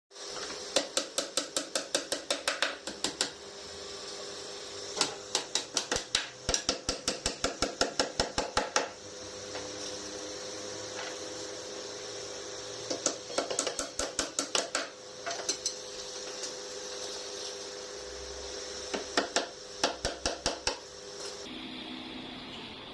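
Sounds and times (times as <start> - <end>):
rapid tool strikes on frame: 0.7 - 3.4, 5.0 - 9.0, 12.9 - 15.8, 18.9 - 20.9
steady hum: 1.6 - 22.9.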